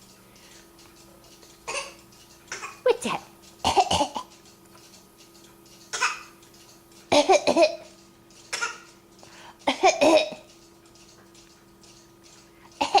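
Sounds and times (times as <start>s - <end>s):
baby coughing: 1.7s - 2.8s, 3.6s - 4.3s, 5.9s - 6.3s, 7.1s - 7.9s, 8.5s - 8.9s, 9.7s - 10.4s, 12.8s - 13.0s.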